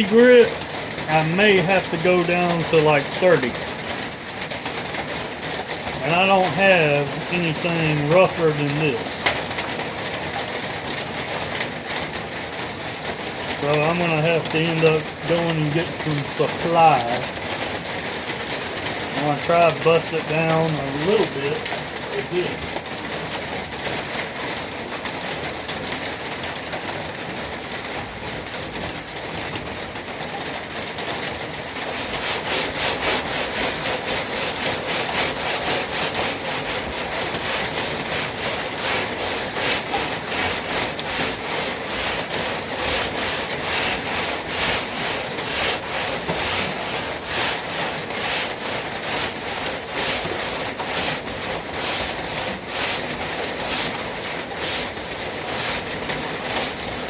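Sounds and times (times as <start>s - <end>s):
sandpaper scratching on metal: 0.0s - 3.6s, 6.0s - 9.2s, 13.6s - 17.4s, 19.2s - 22.6s, 31.7s - 57.0s.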